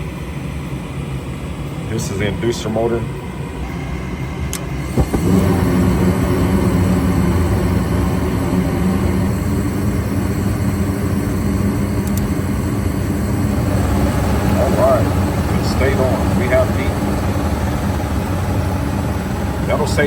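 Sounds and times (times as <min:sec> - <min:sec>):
furnace motor humming: 0:00.0 - 0:20.0
ignition click: 0:04.5 - 0:05.4, 0:12.0 - 0:12.3
burners lighting thump: 0:04.9 - 0:05.5.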